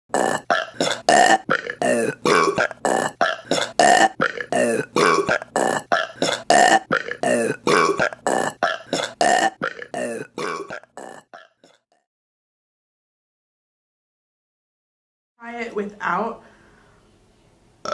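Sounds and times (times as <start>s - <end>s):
women burping: 0.1s - 11.8s.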